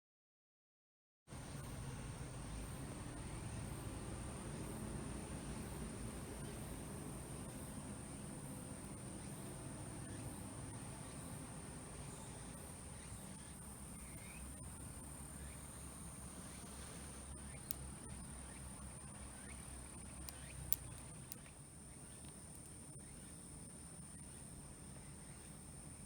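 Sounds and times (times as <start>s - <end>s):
wood fire burning: 19.9s - 22.8s
fire popping: 20.2s - 21.5s.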